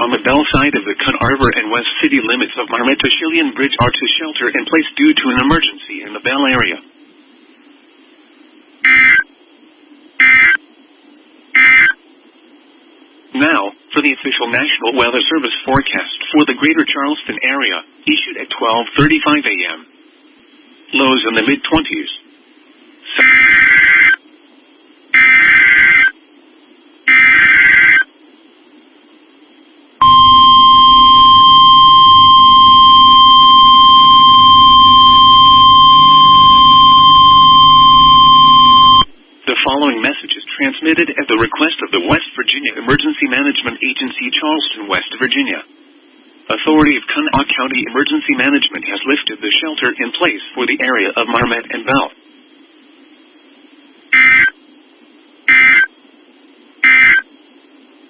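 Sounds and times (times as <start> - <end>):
faint receiver hiss: 0.0 - 58.0
digital data tone bursts: 8.8 - 9.3, 10.2 - 10.6, 11.6 - 12.0, 25.2 - 26.2, 27.1 - 28.1, 30.0 - 39.1, 54.2 - 54.6, 55.5 - 55.9, 56.8 - 57.3
harsh digital data bursts: 23.2 - 24.2, 25.2 - 26.2, 27.1 - 28.1, 54.2 - 54.5, 55.5 - 55.9, 56.8 - 57.2.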